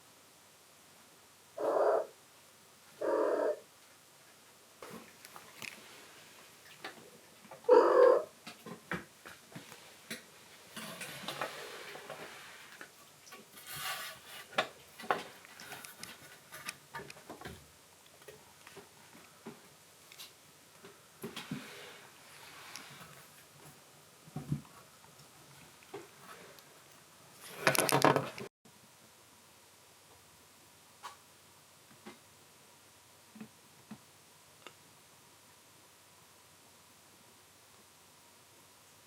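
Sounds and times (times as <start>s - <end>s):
kittens playing clicks and scratches: 8.4s - 26.8s.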